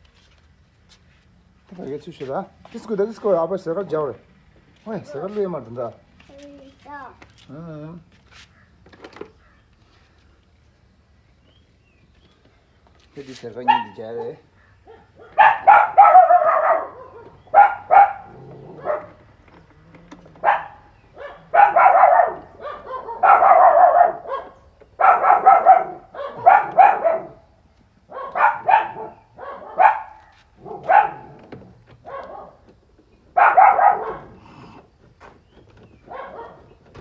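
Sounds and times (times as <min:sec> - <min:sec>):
dog barking: 0:13.6 - 0:14.0, 0:14.8 - 0:19.2, 0:20.4 - 0:27.4, 0:28.1 - 0:31.4, 0:32.0 - 0:32.6, 0:33.4 - 0:34.4, 0:36.1 - 0:36.8.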